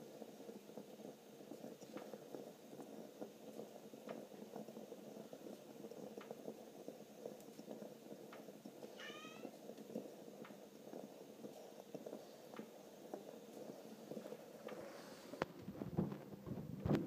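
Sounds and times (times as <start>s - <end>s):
low background noise: 0.0s - 17.0s
cat chirping meow: 9.0s - 9.6s.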